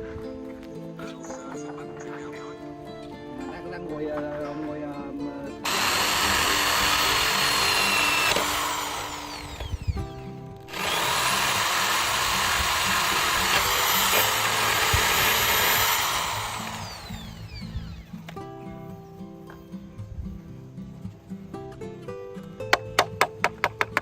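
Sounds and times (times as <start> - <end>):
power tool running under load: 5.6 - 18.3.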